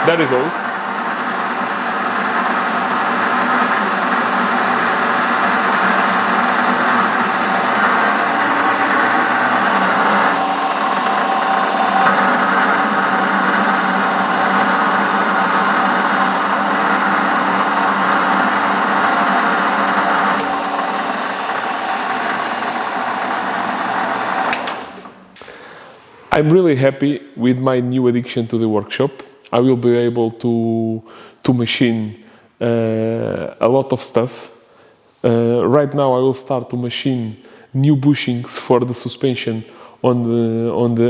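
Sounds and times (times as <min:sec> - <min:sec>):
lathe click: 0:00.0 - 0:25.4
lathe motor and gear whine: 0:00.0 - 0:25.4.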